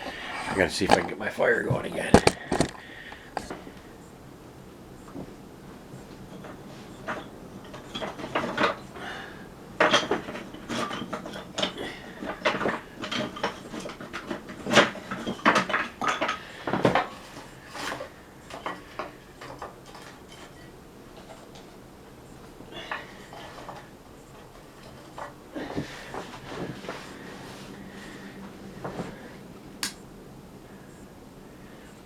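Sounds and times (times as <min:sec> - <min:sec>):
clanks of metal and wood: 0:00.4 - 0:03.8, 0:06.0 - 0:21.8, 0:22.4 - 0:27.3.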